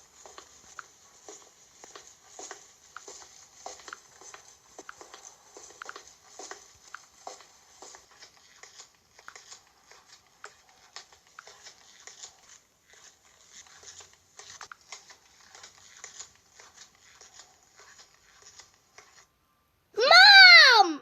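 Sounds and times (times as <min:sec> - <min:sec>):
rustling and light tapping: 0:00.0 - 0:19.3
child calling out: 0:20.0 - 0:21.0.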